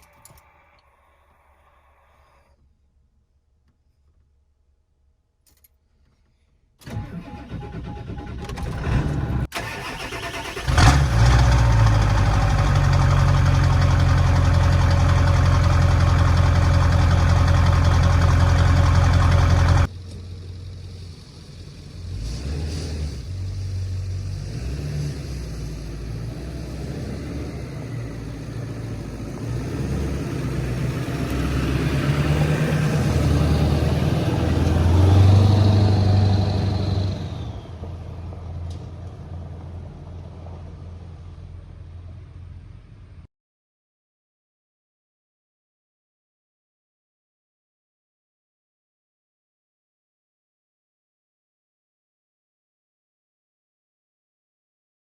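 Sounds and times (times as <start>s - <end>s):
engine cranking and running: 6.8s - 22.3s
uneven engine sound: 6.8s - 43.3s.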